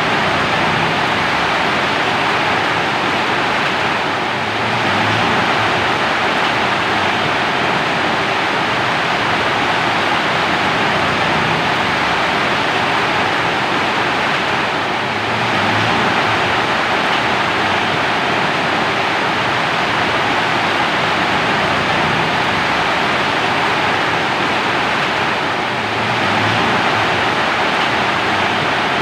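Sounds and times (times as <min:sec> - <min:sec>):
heavy rainfall: 0:00.0 - 0:29.0.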